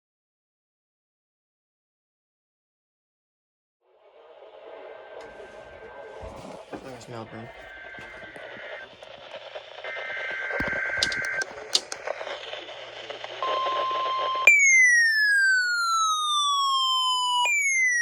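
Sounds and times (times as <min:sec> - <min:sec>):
radio hiss and static: 0:04.4 - 0:14.4
warbling two-tone data bursts: 0:10.1 - 0:12.0
falling siren-like tone: 0:13.5 - 0:18.0.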